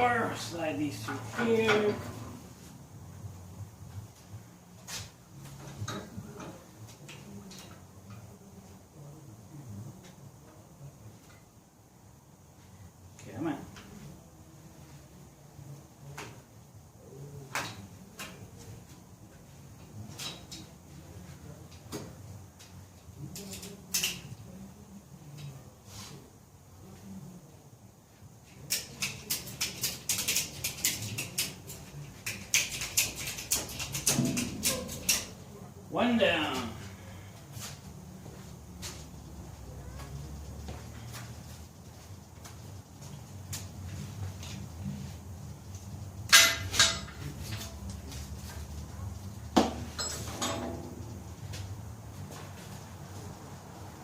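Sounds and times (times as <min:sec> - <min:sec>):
metal hardware clanking: 0:46.3 - 0:47.3, 0:49.7 - 0:51.1
metallic ringing: 0:49.9 - 0:51.0.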